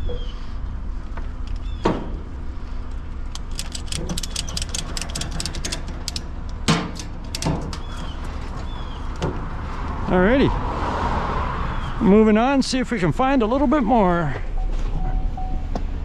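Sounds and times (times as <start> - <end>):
truck engine and road rumble: 0.0 - 16.0
fast clicks: 3.3 - 7.9.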